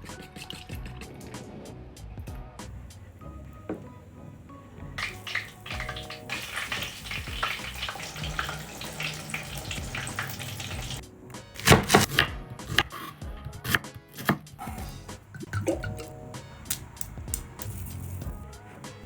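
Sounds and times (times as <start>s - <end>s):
knife chopping on a board: 11.6s - 15.0s.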